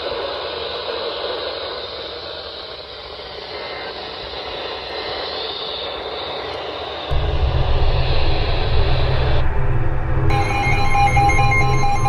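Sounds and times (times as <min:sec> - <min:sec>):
loud low rumble: 0:07.1 - 0:12.0.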